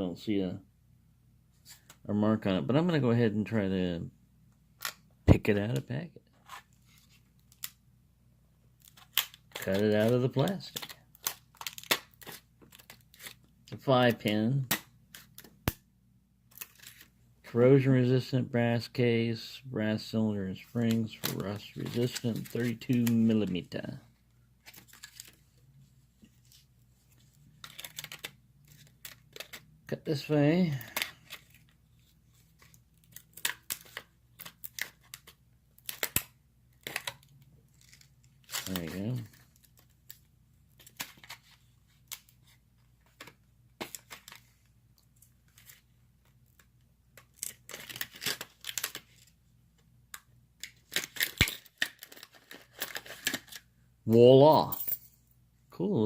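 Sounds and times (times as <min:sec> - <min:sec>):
scissors cutting plastic packaging: 0:47.3 - 0:49.0.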